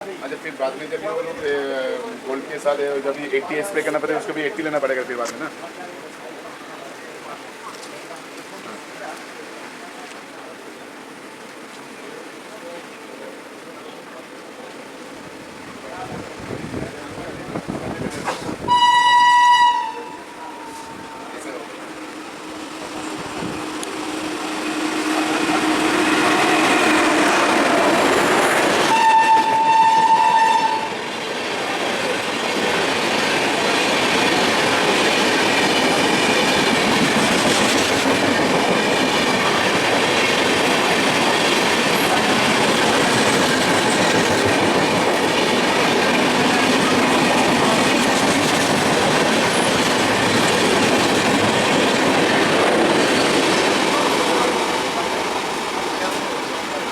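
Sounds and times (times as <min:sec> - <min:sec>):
train wheels on rails: 0:00.0 - 0:56.9
train horn blast: 0:18.6 - 0:27.7, 0:28.8 - 0:31.0.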